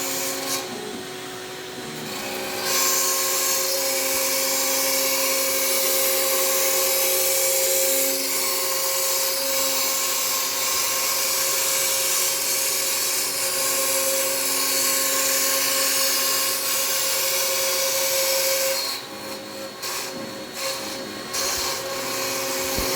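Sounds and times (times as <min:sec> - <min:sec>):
vacuum running: 0:00.0 - 0:04.3, 0:19.0 - 0:22.9
router spindle cutting acrylic: 0:00.0 - 0:22.9.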